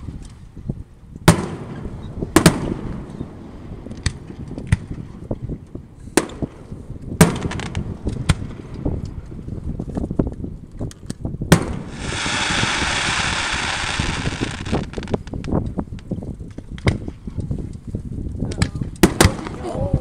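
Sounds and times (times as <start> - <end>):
fireworks bursting: 11.5 - 15.5.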